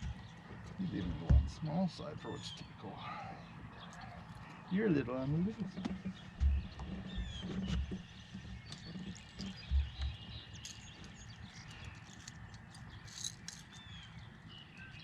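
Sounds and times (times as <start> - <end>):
low dull thumps: 0.0 - 1.8, 5.4 - 10.4
songbirds chirping: 0.0 - 15.0.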